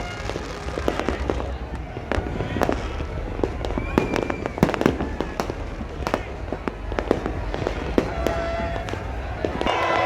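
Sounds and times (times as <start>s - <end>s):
low rumble: 0.0s - 9.8s
firecrackers bangs and pops: 0.0s - 10.0s
high whistle: 3.6s - 5.2s.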